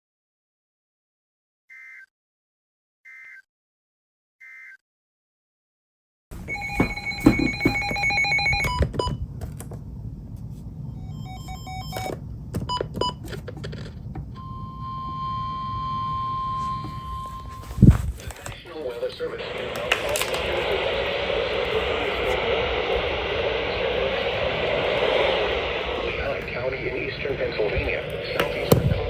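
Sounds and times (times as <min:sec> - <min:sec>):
data bursts: 0:06.5 - 0:08.8, 0:18.5 - 0:29.0
steady single tone: 0:14.4 - 0:17.8, 0:19.3 - 0:29.0
rumbling background: 0:16.7 - 0:29.0.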